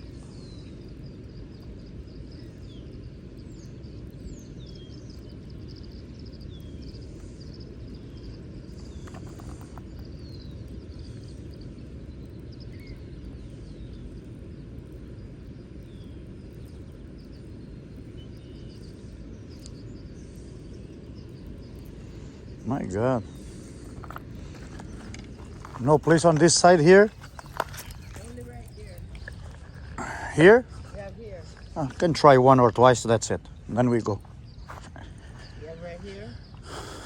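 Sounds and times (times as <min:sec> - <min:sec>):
low rumble: 0:00.0 - 0:36.6
bird chirps: 0:15.6 - 0:37.0.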